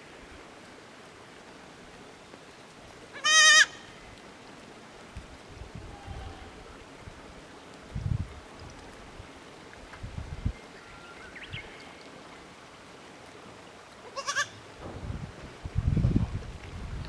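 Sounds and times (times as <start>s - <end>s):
goat kid bleating: 3.2s - 3.9s, 5.9s - 6.6s, 14.2s - 14.6s
wind rumbling on microphone: 5.1s - 11.8s, 14.6s - 17.0s.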